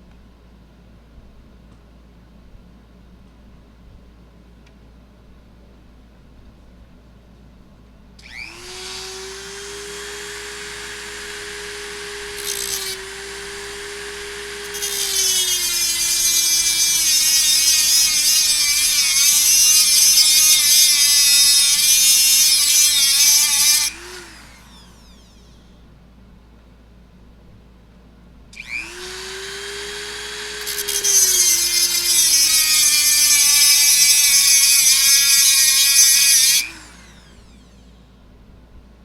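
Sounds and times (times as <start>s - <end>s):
power tool grinding metal bolt: 8.2s - 25.5s, 28.6s - 37.7s
power tool whining: 8.2s - 25.7s, 28.6s - 37.9s.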